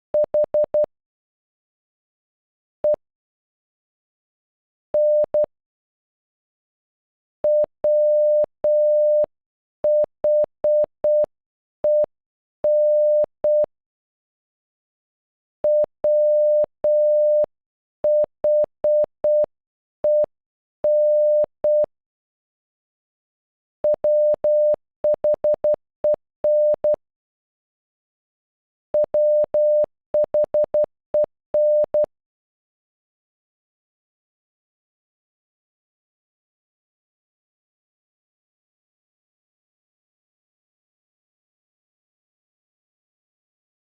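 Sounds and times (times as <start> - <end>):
morse code beeps: 5.0 - 5.5, 7.5 - 9.3, 12.7 - 13.7, 15.7 - 17.5, 20.9 - 21.9, 23.9 - 27.0, 29.0 - 32.1.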